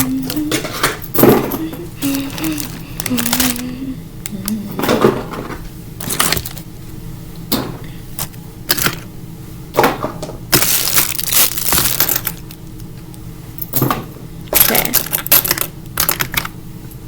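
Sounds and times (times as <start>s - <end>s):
packaging rustling: 2.0s - 3.8s, 6.0s - 6.7s, 10.6s - 12.6s
plastic toys knocking and clattering: 13.8s - 16.5s.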